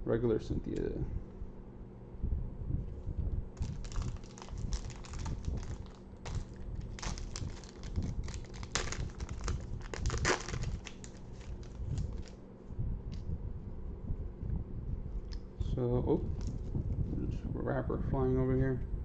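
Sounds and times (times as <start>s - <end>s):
wrapper crinkling and tearing: 3.6s - 12.4s.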